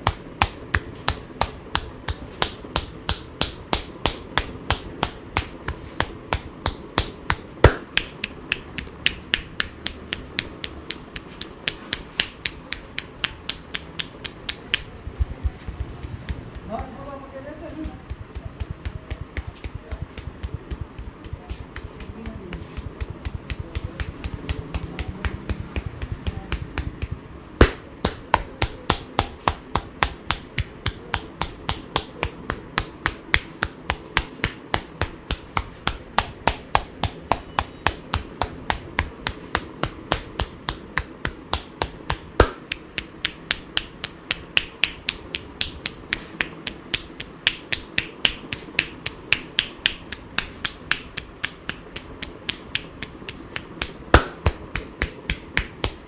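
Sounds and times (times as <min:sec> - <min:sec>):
hands slapping in massage: 0:00.0 - 0:56.0
loud knocks: 0:17.8 - 0:41.2.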